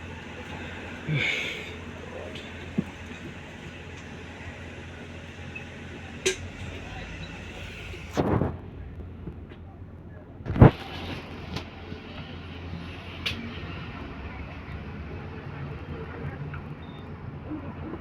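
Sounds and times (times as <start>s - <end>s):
bus engine low hum: 0.0s - 18.0s.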